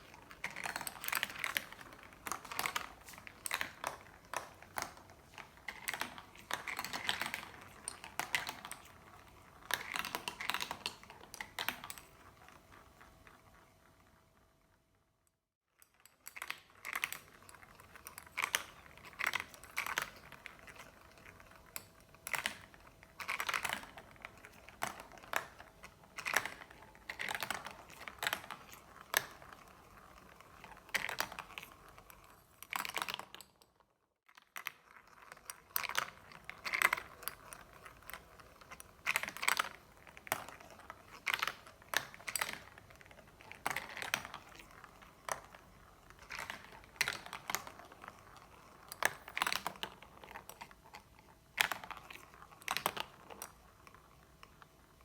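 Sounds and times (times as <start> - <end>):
marbles clattering down track: 0.0 - 13.0.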